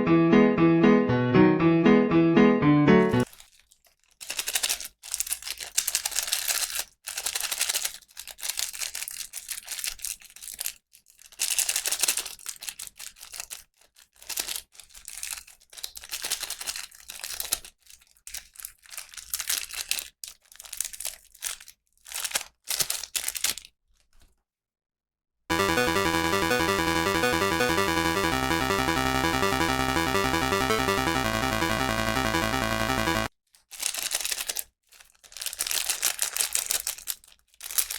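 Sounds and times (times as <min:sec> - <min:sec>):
packaging crinkling and tearing: 0:03.2 - 0:24.4, 0:33.6 - 0:37.9.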